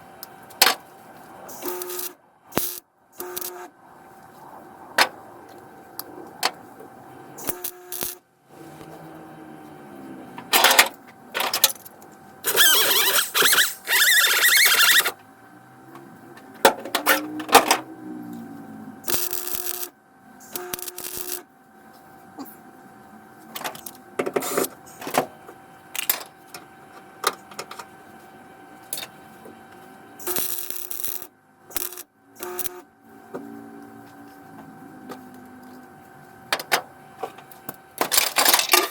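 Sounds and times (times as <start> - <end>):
welding arc crackling: 1.5 - 3.7, 7.4 - 8.2, 12.4 - 15.1, 19.0 - 21.5, 30.2 - 32.8.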